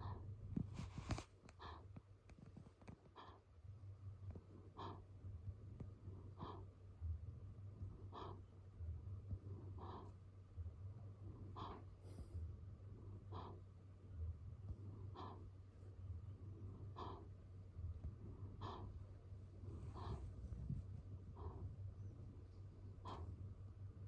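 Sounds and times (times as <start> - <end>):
faint low hum: 0.0 - 24.0
wheezy snoring: 16.3 - 17.3.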